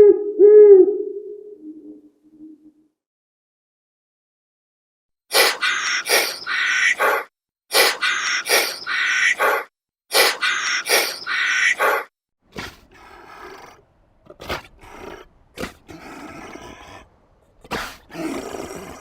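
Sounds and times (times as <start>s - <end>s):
animal harsh calls: 5.3s - 19.0s.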